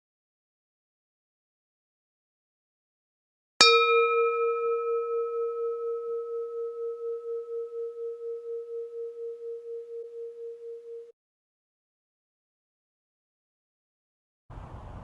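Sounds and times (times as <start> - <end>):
struck bell ringing: 3.6 - 11.1.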